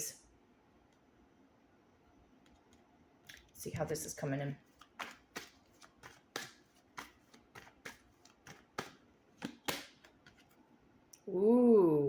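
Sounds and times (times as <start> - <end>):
cards being shuffled: 4.7 - 10.5.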